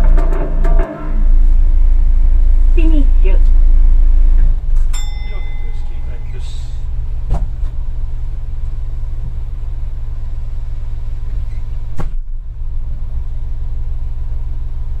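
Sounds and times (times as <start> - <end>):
sharp knock: 0.0 - 1.5, 11.9 - 12.3
vehicle engine low rumble: 0.0 - 15.0.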